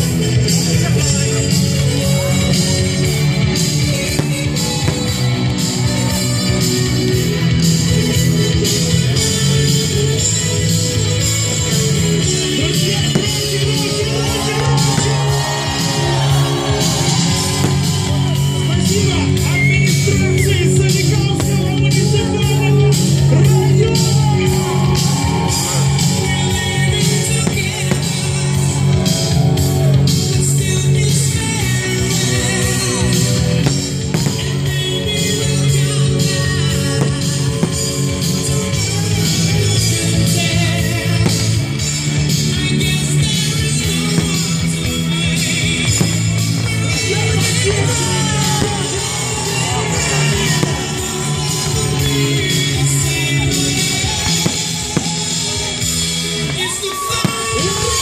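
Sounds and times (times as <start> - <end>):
loud rock music: 0.0 - 58.0
strong bass: 0.0 - 58.0
person singing: 30.0 - 55.6.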